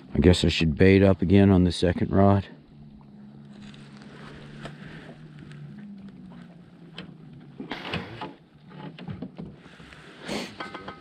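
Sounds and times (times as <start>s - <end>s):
low steady hum: 0.0s - 11.0s
rustle: 3.0s - 11.0s.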